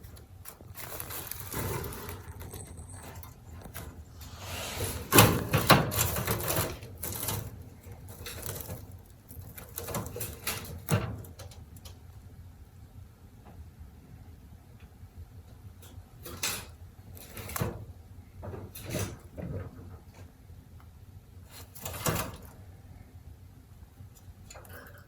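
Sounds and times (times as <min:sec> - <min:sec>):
rabbit scratching hay mat: 0:00.0 - 0:11.7, 0:16.2 - 0:17.9, 0:21.4 - 0:22.6.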